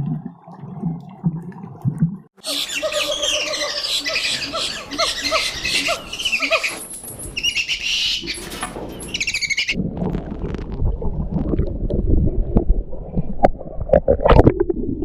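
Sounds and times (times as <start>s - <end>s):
bird twittering: 2.4s - 9.8s.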